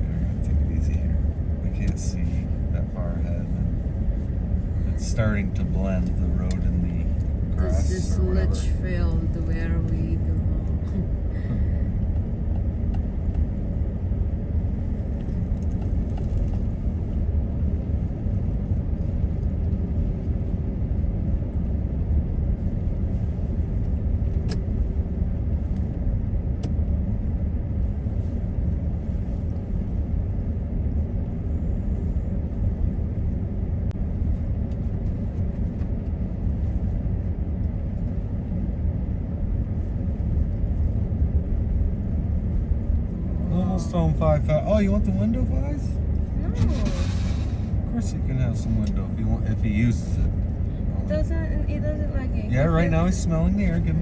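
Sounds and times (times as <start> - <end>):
truck cabin road rumble: 0.0 - 54.0.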